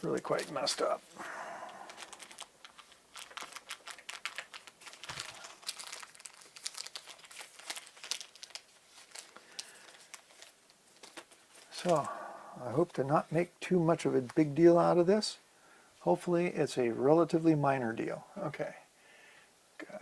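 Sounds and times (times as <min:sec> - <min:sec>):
plastic parts clicking and crinkling: 0:00.0 - 0:01.0, 0:01.9 - 0:12.1.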